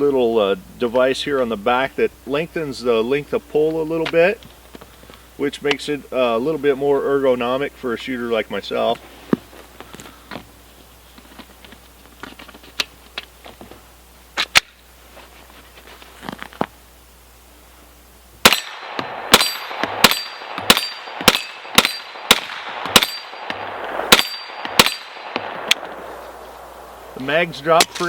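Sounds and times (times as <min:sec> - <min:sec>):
rifle gunshots: 0:18.4 - 0:26.2.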